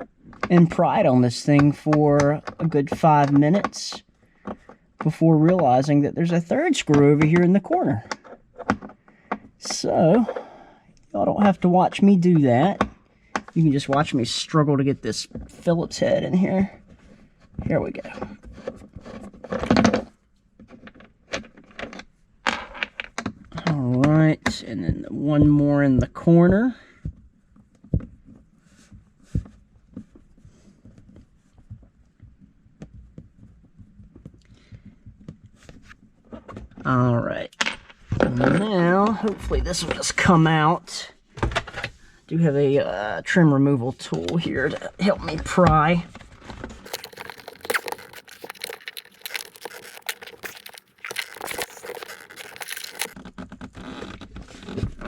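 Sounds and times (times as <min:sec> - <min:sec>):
plastic mount crackling and scraping: 0:15.2 - 0:24.6, 0:44.1 - 0:55.0.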